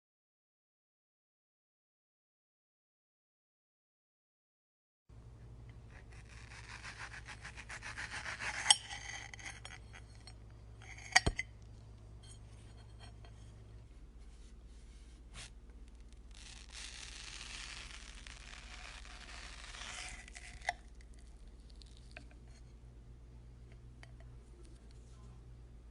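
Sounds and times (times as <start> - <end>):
knife rasping on fruit: 5.9 - 11.4, 16.3 - 20.9.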